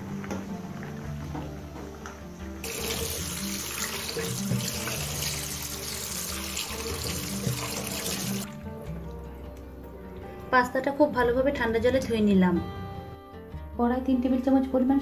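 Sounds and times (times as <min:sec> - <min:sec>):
background music: 0:00.0 - 0:15.0
tap water running: 0:00.2 - 0:09.4.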